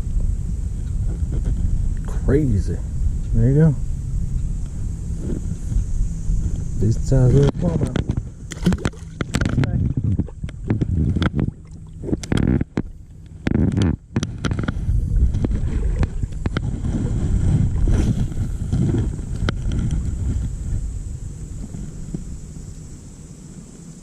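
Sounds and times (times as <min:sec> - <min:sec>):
wind and water rumbling: 0:00.0 - 0:24.0
sharp clicks and knocks: 0:07.4 - 0:11.5, 0:12.1 - 0:16.7.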